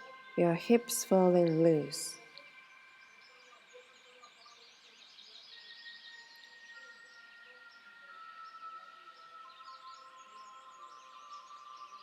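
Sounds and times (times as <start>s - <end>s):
birds chirping and twittering: 0.0s - 12.0s
long held bird tones: 0.0s - 12.0s.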